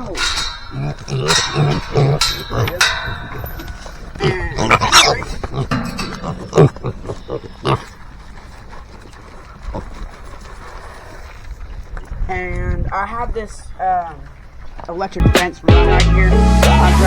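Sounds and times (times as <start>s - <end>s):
pigs squealing: 0.0s - 8.4s
pigs grunting: 0.0s - 11.4s.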